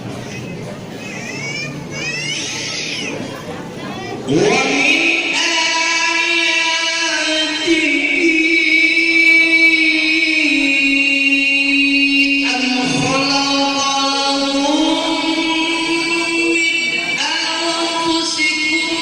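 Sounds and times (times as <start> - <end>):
person reciting a long melodic note: 4.2 - 19.0.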